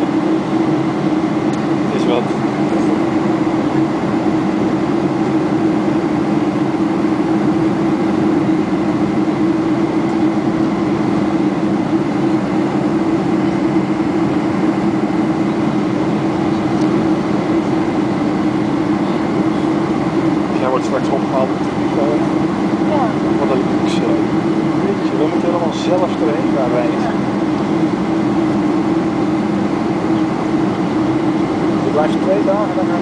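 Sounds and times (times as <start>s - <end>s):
airplane cabin engine drone: 0.0s - 33.0s.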